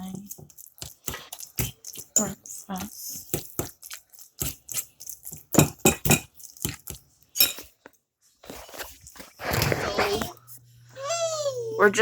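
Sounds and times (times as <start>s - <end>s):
dishes and cutlery clinking: 3.3s - 8.0s.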